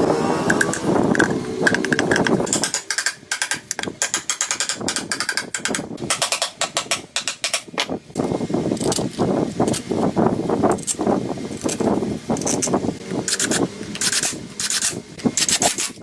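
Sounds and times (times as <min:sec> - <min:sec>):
dense rasping noise: 0:00.0 - 0:06.0
ratchet clicking: 0:00.5 - 0:07.6, 0:08.8 - 0:09.8, 0:10.7 - 0:16.0.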